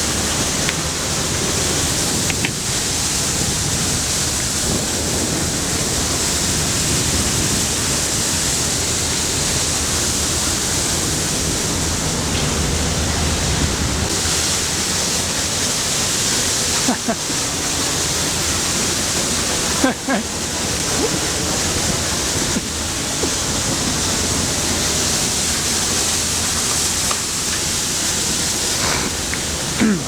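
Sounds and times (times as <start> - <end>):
low steady fan hum: 0.0 - 30.0
ventilation air rushing: 0.0 - 30.0.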